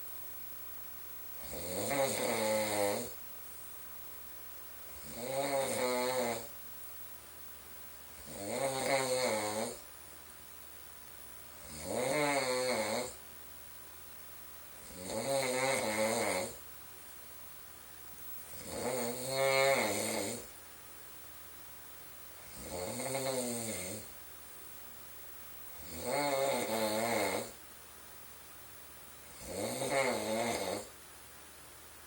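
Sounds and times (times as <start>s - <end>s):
man snoring: 1.4s - 3.2s, 4.9s - 6.5s, 8.2s - 9.8s, 11.6s - 13.2s, 14.8s - 16.6s, 18.5s - 20.5s, 22.5s - 24.1s, 25.8s - 27.6s, 29.3s - 30.9s.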